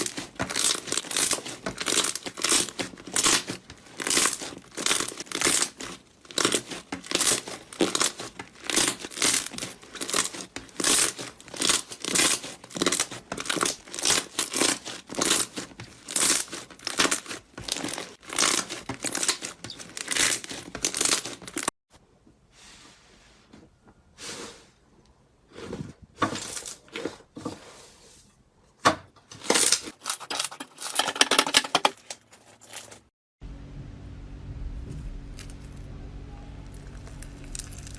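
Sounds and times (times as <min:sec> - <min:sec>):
slime squishing and popping: 0:00.0 - 0:21.6, 0:36.7 - 0:37.9.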